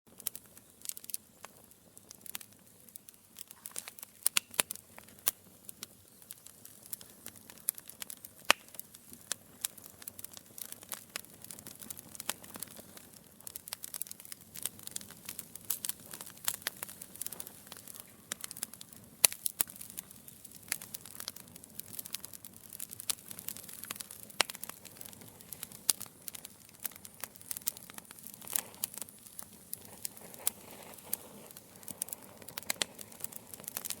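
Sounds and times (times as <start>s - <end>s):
fire crackling and popping: 0.1s - 34.0s
hiss and rumble of burning: 0.1s - 34.0s.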